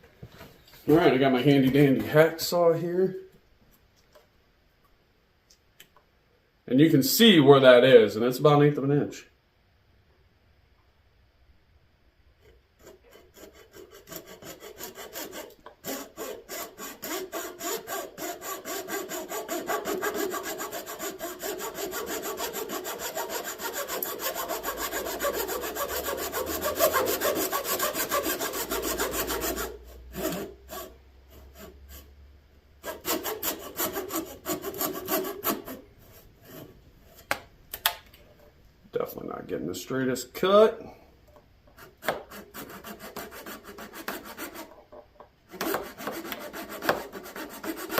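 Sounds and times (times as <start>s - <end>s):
hacksaw cutting metal tube: 12.8s - 32.1s, 32.8s - 37.4s, 41.7s - 44.8s, 45.5s - 47.9s.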